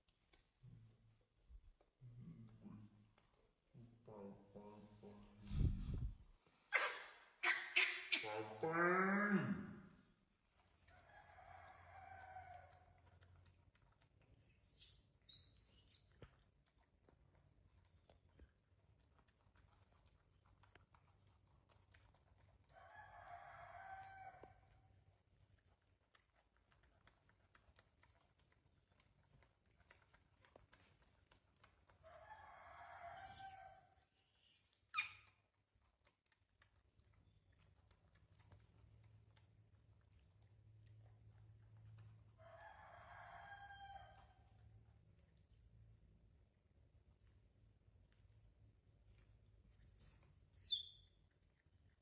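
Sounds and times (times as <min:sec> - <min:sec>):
rooster crowing: 0:42.5 - 0:44.2.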